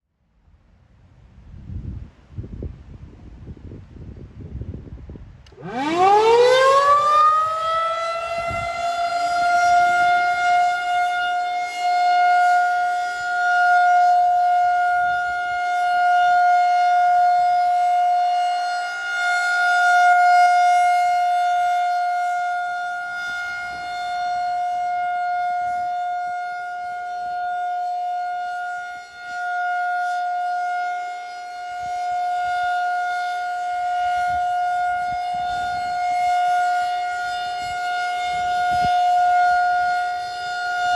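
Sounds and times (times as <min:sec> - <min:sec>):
outdoor warning siren steady tone: 0:02.4 - 0:40.9.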